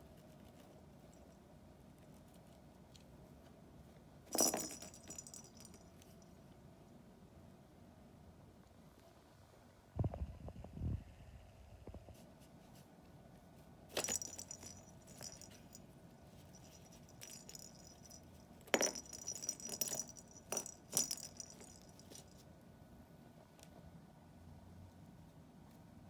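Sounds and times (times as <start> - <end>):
toys rattling and clinking: 4.3 - 6.2, 13.9 - 15.8, 16.4 - 22.4.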